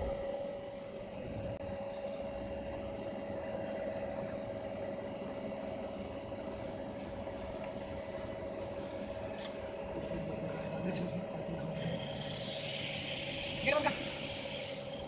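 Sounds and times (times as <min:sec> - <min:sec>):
lathe humming with steady tone: 0:00.0 - 0:15.0.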